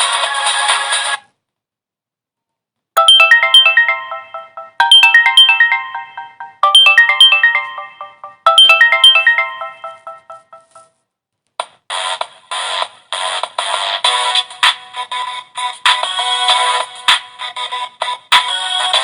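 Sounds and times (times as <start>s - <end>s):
ringtone of chiming notes: 3.0s - 10.9s.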